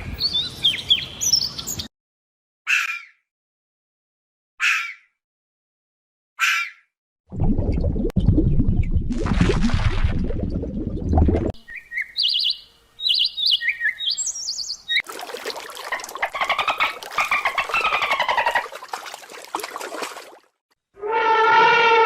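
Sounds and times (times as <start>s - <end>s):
birds chattering: 11.6s - 15.0s, 15.8s - 18.7s
birds chirping: 11.6s - 15.0s, 15.8s - 18.8s.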